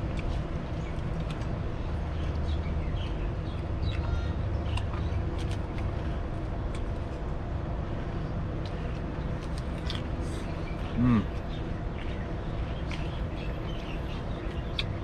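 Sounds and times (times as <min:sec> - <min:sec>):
small birds chirping: 0:00.0 - 0:07.2, 0:08.1 - 0:15.0
road traffic rumble: 0:00.0 - 0:15.0.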